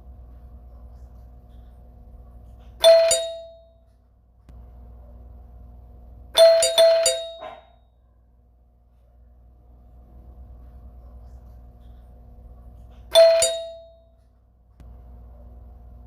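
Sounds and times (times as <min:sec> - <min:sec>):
faint steady hum: 0:00.0 - 0:16.0
doorbell dings: 0:02.8 - 0:03.9, 0:06.4 - 0:07.8, 0:13.1 - 0:14.2.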